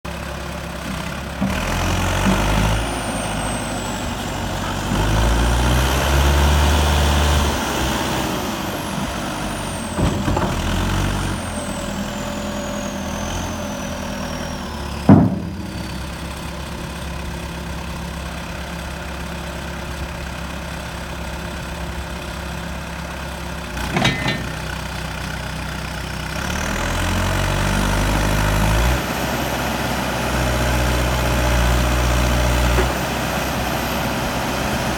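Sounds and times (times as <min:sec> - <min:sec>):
diesel engine revving: 0:00.4 - 0:34.9
sharp loud clunk: 0:15.0 - 0:16.5, 0:23.9 - 0:24.8.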